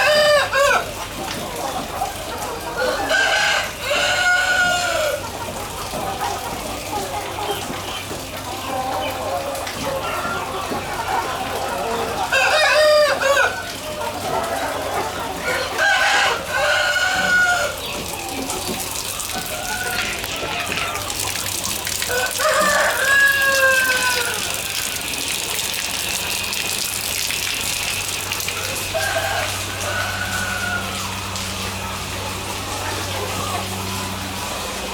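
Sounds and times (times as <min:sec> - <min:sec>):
roosters crowing: 0:00.0 - 0:01.0, 0:02.7 - 0:05.4, 0:11.2 - 0:32.1
hens clucking: 0:00.0 - 0:34.9.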